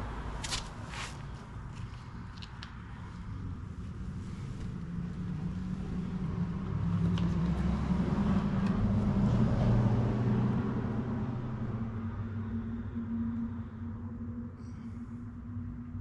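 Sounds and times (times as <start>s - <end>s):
vehicle engine passing by: 4.3s - 14.3s.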